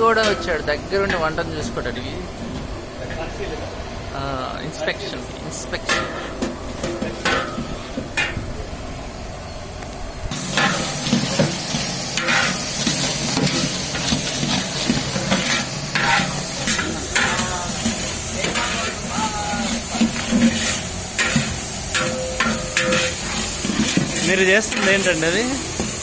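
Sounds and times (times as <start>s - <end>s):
food sizzling in a pot: 10.3s - 26.0s
ladle scraping a pot: 10.3s - 26.0s.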